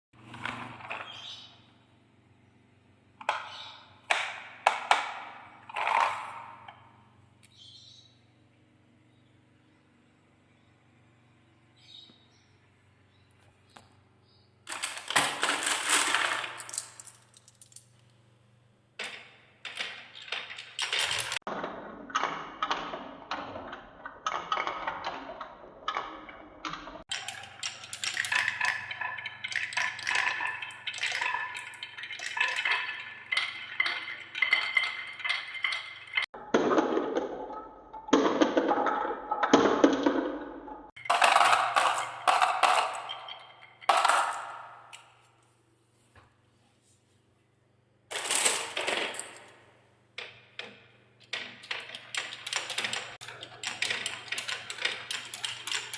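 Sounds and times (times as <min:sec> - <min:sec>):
marbles clattering down wooden track: 0:04.1 - 0:06.8, 0:14.7 - 0:17.9, 0:19.0 - 0:45.0, 0:48.1 - 0:49.6, 0:50.2 - 0:55.9.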